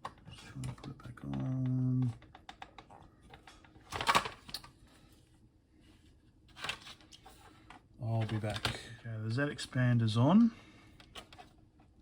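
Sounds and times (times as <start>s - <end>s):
plastic clicks and scraping: 0.0s - 4.7s, 6.5s - 8.9s.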